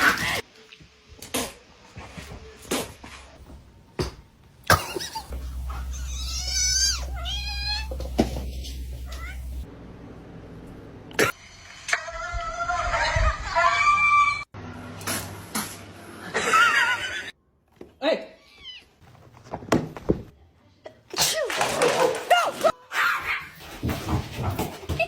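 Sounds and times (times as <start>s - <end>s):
steady low hum: 4.7s - 11.1s
cat meowing: 5.8s - 8.2s, 9.0s - 9.6s.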